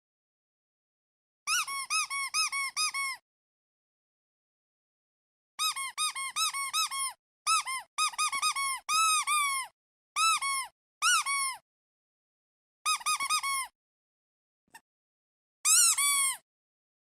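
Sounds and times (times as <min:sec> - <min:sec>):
rubber duck toy squeaking: 0:01.5 - 0:03.2, 0:05.6 - 0:11.6, 0:12.9 - 0:13.7, 0:15.6 - 0:16.4.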